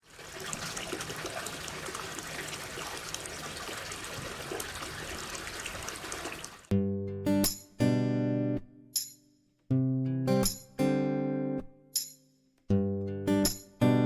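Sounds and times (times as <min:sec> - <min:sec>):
water trickling and splashing: 0:00.0 - 0:06.7.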